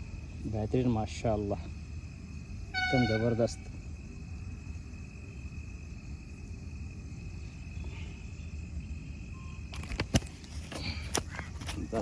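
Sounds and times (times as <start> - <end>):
faint high-pitched tone: 2.8 - 3.8, 9.3 - 9.7.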